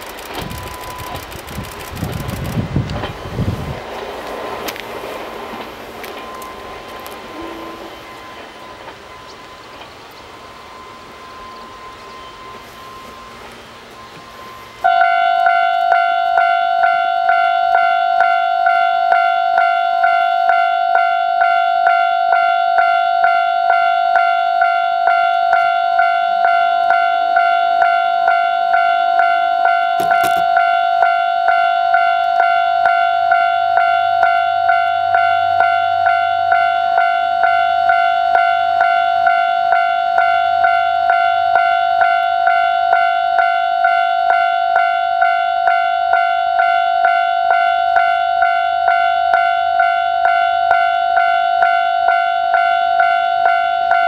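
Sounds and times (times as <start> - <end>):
sharp click: 0.0 - 3.1, 30.0 - 30.5
level crossing warning bell: 0.0 - 54.0.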